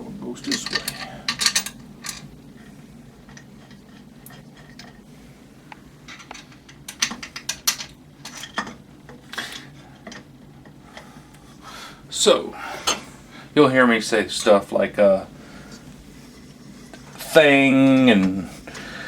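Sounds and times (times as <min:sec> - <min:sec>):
metal parts clinking and clicking: 0:00.4 - 0:02.3, 0:06.1 - 0:08.8.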